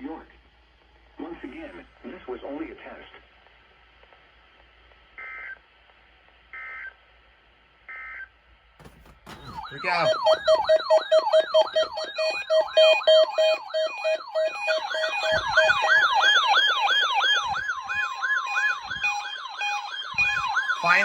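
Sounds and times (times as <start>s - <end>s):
steady alarm tones: 8.8s - 21.0s
pulsing beep: 9.3s - 16.2s
siren-like yelp: 9.3s - 21.0s.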